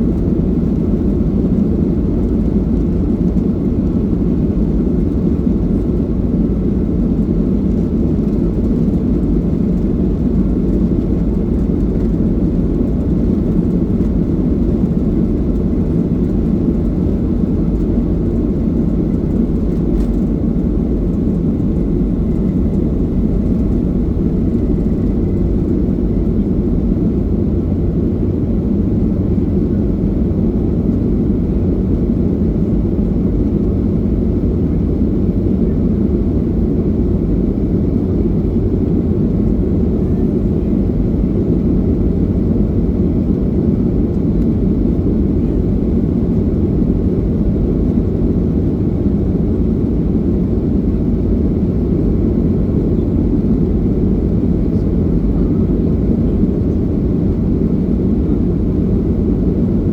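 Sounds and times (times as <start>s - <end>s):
jet engines roaring: 0.0s - 35.2s.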